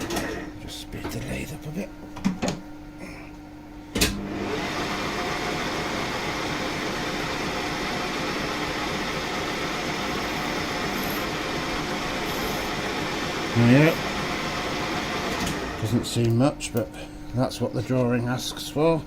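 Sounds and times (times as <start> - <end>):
faint steady hum: 0.0 - 4.1
metal lathe whirring: 4.2 - 16.1.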